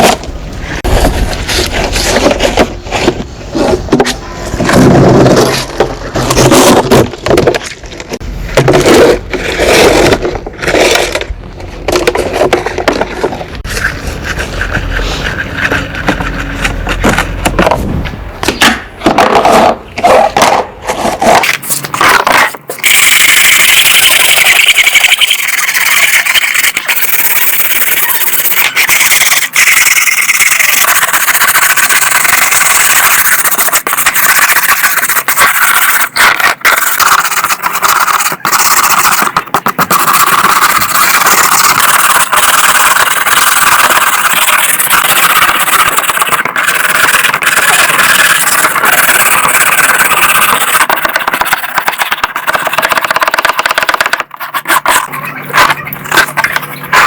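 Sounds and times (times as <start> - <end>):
scraping and knocking: 0.8 - 22.9.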